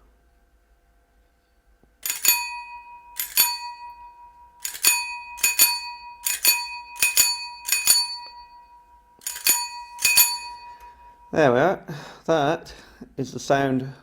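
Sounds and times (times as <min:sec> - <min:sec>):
bicycle bell ringing: 0:02.0 - 0:11.6.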